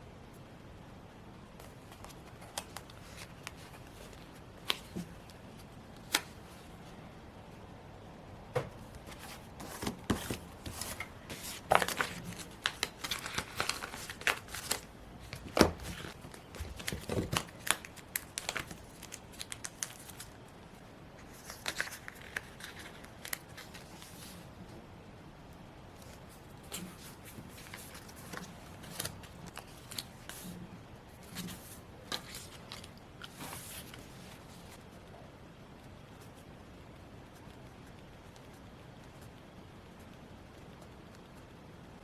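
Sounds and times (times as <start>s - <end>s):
paper crinkling and rustling: 1.6s - 6.8s, 8.8s - 20.4s, 21.2s - 24.6s, 26.0s - 34.8s.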